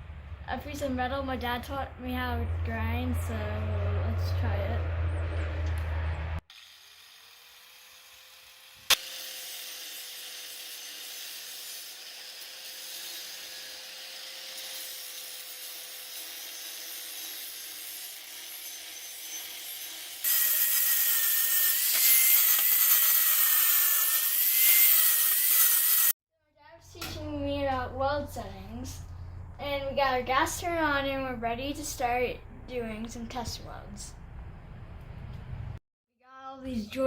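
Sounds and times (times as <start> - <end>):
grinder grinding steel: 6.5 - 26.2.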